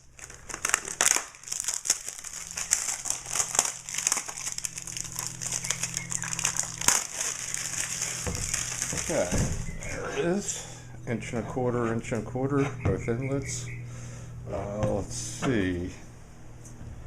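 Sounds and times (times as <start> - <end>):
packaging crinkling and crackling: 0.0 - 9.8.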